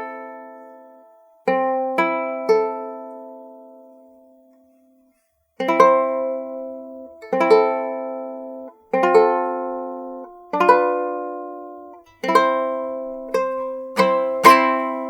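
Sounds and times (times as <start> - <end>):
steel-string guitar chords strummed: 12.2 - 15.0.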